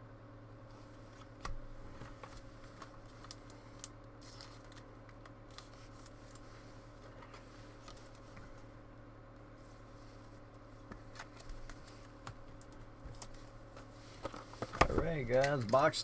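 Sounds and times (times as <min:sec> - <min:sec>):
low electrical hum: 0:00.0 - 0:16.0
cards and packaging rustling: 0:02.1 - 0:06.5, 0:10.9 - 0:16.0.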